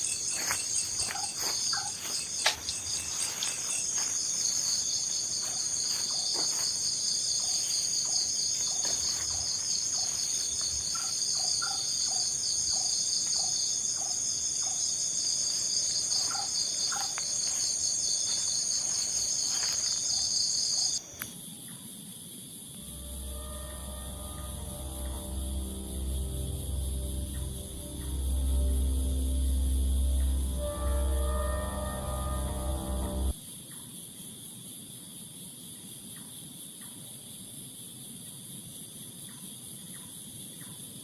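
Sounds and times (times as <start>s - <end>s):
insect chorus shrill trilling: 0.0s - 21.6s, 22.8s - 33.8s.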